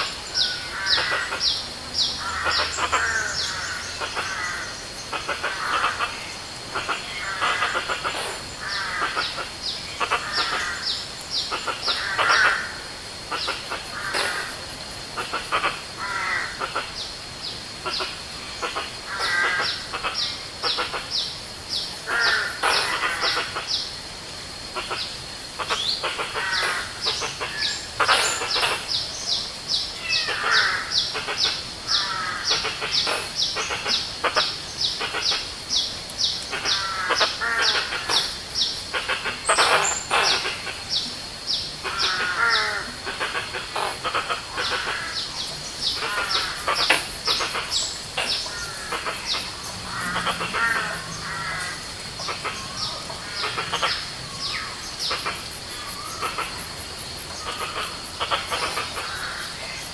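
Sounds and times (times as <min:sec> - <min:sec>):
low rough bird calls: 0:24.8 - 0:59.9.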